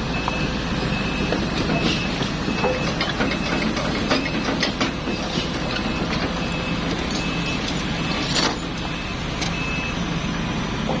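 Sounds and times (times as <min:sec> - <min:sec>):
excavator diesel engine running: 0:00.0 - 0:11.0
metallic clanks: 0:02.6 - 0:08.8.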